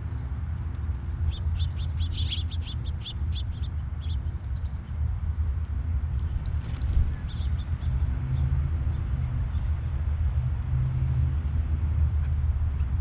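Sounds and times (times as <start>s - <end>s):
low mechanical hum: 0.0s - 13.0s
high-pitched bird chirps: 1.3s - 4.2s.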